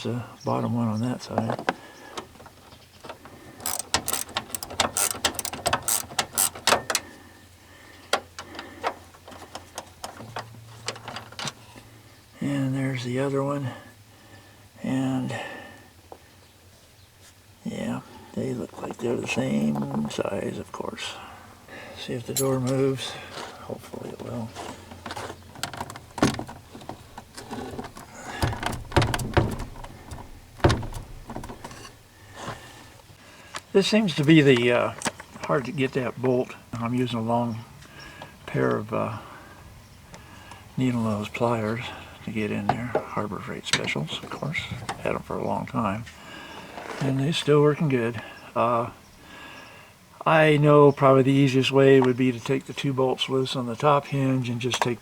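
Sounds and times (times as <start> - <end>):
ratchet wrench clicking: 3.6 - 7.0
truck door knocking and clunking: 25.5 - 32.1.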